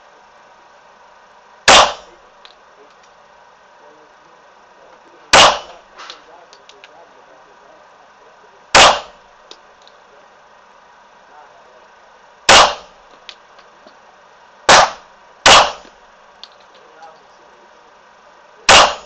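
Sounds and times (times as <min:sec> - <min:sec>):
pistol shots: 0:01.7 - 0:02.2, 0:05.3 - 0:05.9, 0:08.7 - 0:09.2, 0:12.5 - 0:13.0, 0:14.7 - 0:15.9, 0:18.7 - 0:19.0.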